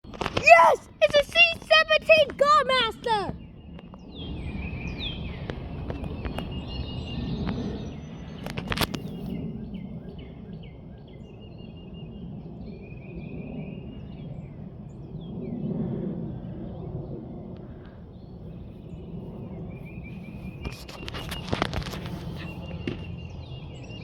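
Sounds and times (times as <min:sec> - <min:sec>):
small birds chirping: 0:18.6 - 0:24.0.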